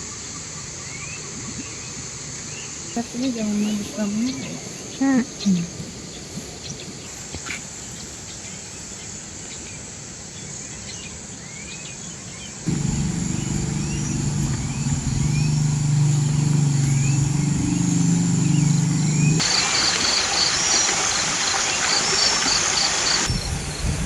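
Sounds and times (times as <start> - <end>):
steady high hiss: 0.0 - 24.0
loud low rumble: 12.7 - 19.4.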